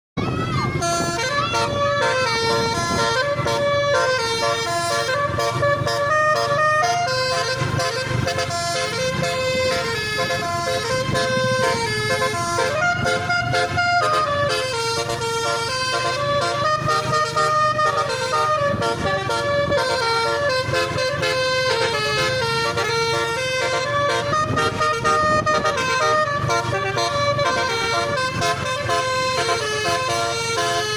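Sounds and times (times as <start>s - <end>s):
multi-tone bus horn melody: 0.2s - 30.9s
vehicle engine running: 0.2s - 30.9s.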